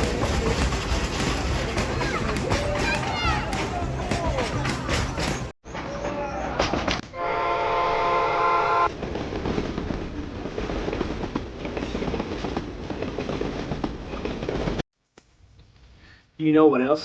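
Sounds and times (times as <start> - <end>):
toy train clattering: 0.0 - 5.5.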